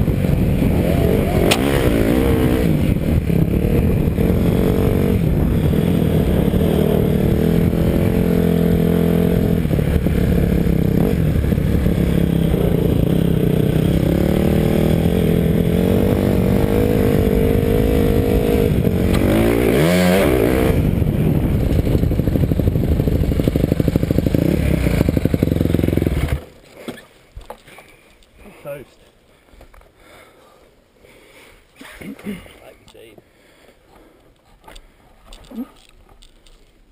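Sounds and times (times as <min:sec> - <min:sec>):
dirt bike engine revving: 0:00.0 - 0:26.5.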